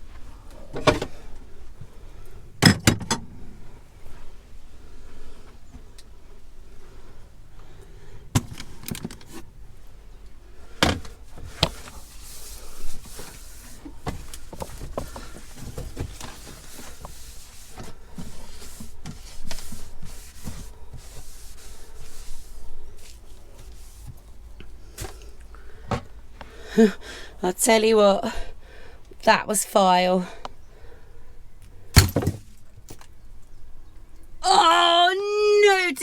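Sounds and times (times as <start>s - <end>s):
containers clunking and rattling: 0.6s - 1.3s, 2.6s - 3.4s, 8.4s - 9.5s, 10.7s - 21.2s, 32.0s - 33.2s.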